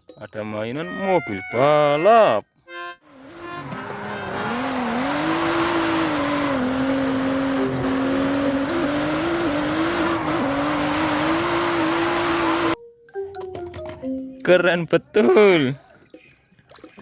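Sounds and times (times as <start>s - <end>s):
racing car engine: 3.0s - 12.8s.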